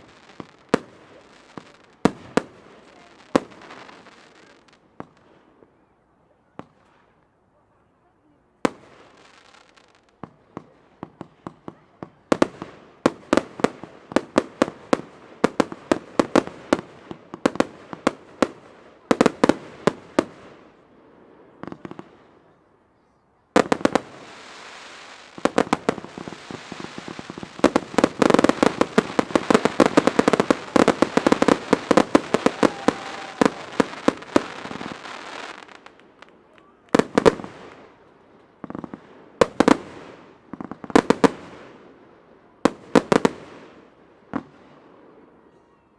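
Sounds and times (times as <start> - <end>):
fireworks bursting with sharp bangs: 0.0 - 7.3, 8.6 - 45.7
fireworks hiss: 23.7 - 35.9.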